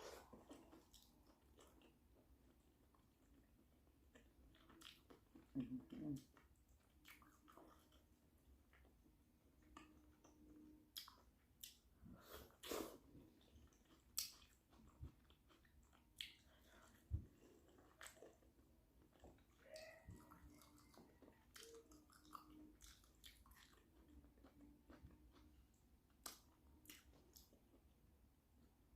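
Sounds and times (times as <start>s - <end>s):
chewing and biting: 0.0s - 8.9s, 13.4s - 27.7s
wet mouth smacks and clicks: 14.2s - 14.5s.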